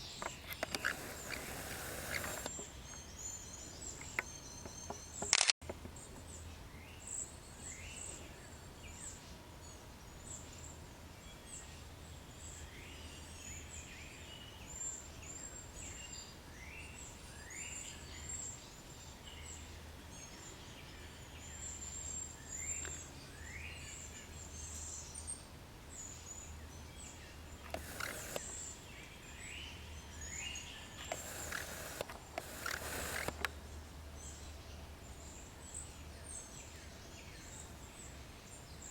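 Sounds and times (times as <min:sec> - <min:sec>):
steady low hum: 0:31.0 - 0:34.2.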